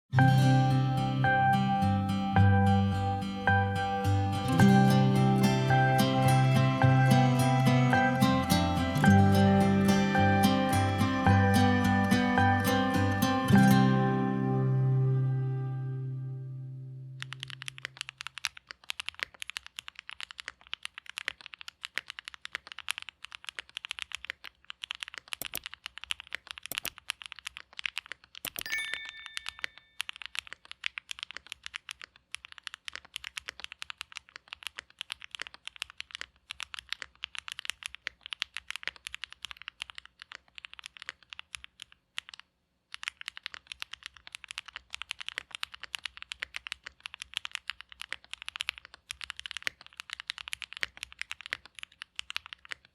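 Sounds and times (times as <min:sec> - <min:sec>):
mechanical keyboard typing: 0:17.2 - 0:52.9.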